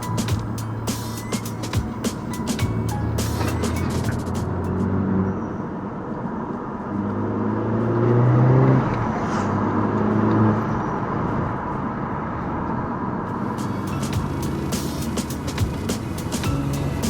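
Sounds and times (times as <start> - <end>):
car engine revving while driving: 6.8 - 10.8, 13.4 - 17.0.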